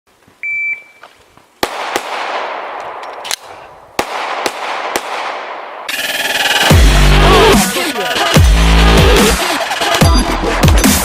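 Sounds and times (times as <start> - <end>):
pistol shots echoing: 1.6 - 5.9
electronic music: 5.9 - 11.0.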